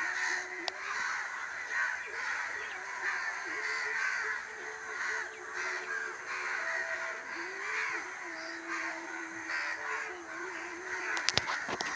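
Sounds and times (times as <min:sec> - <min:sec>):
crows cawing: 0:00.0 - 0:11.9.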